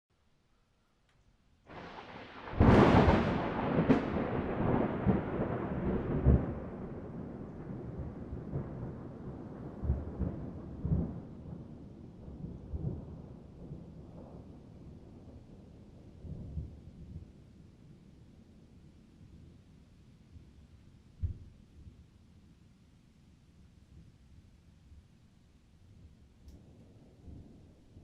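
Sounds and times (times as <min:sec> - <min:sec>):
thunder crack: 0:01.7 - 0:11.7
deep thunder booms: 0:01.7 - 0:15.3
rolling thunder rumble: 0:01.7 - 0:17.7, 0:26.0 - 0:28.0.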